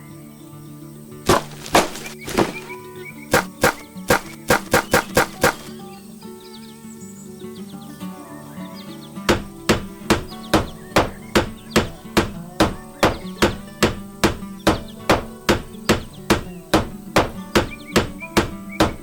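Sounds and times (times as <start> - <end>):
chirping: 1.3 - 5.7.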